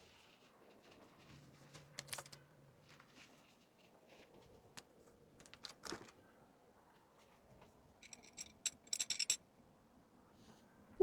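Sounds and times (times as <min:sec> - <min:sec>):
soft packaging rustle: 0:00.1 - 0:06.3.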